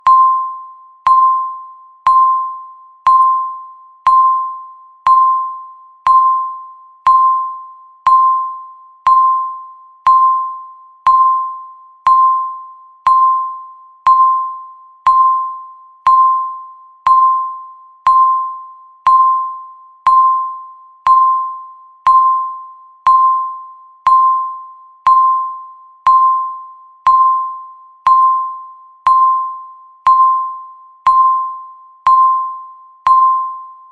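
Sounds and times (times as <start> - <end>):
timer beep: 0.0 - 33.9.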